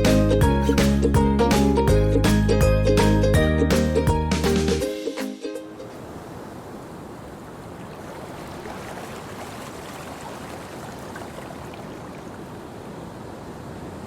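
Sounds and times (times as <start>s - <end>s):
wind: 3.9s - 14.0s
sea waves rushing: 4.8s - 14.0s.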